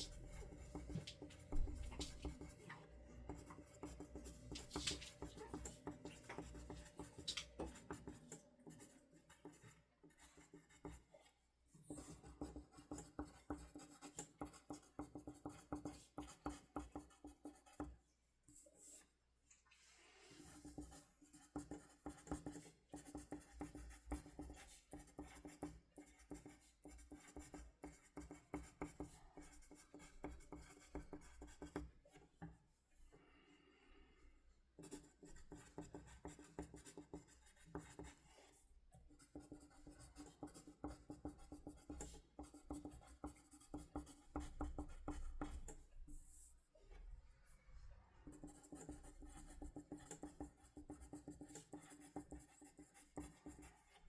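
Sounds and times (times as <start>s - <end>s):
pen scratching on paper: 0.0s - 2.7s, 3.3s - 11.1s, 11.9s - 17.9s, 20.4s - 31.9s, 34.8s - 46.5s, 48.2s - 54.0s.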